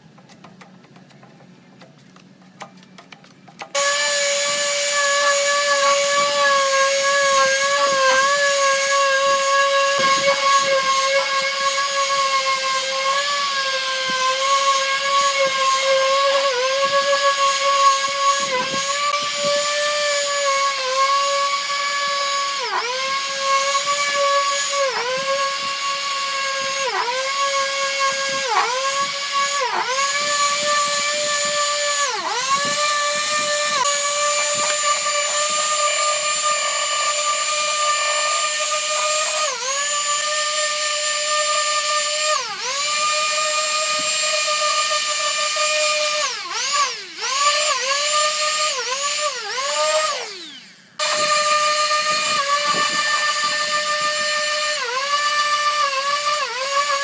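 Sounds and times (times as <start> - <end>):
power tool whining: 2.6 - 57.0.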